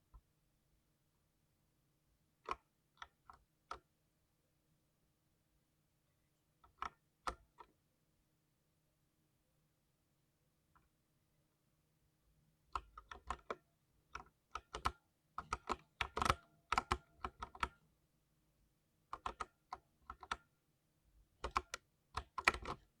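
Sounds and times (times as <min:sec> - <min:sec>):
mechanical keyboard typing: 0:12.8 - 0:13.6, 0:14.2 - 0:17.8, 0:19.2 - 0:20.5, 0:21.4 - 0:22.9.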